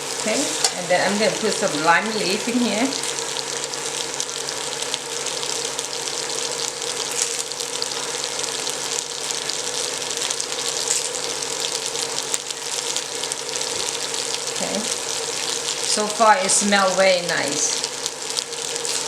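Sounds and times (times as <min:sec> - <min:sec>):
paste frying in hot oil: 0:00.0 - 0:19.0.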